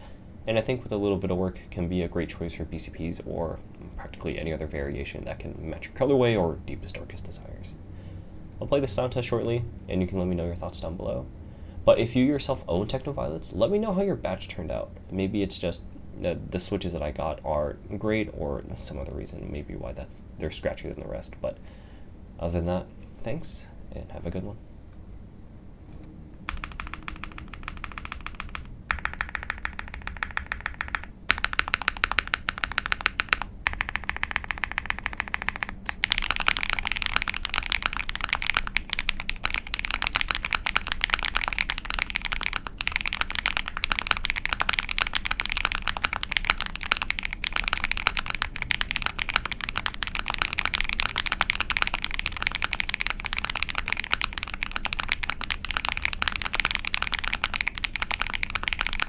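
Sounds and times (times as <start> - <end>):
mechanical keyboard typing: 26.5 - 59.0.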